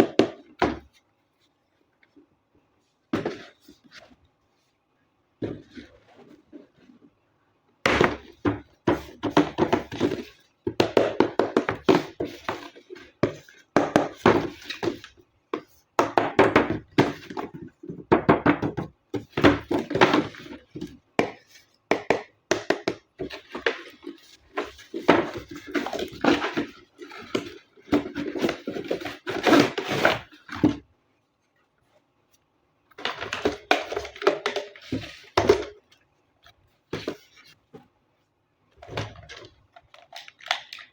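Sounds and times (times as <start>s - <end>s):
packaging rustling and knocking: 16.0s - 30.8s, 32.9s - 35.8s.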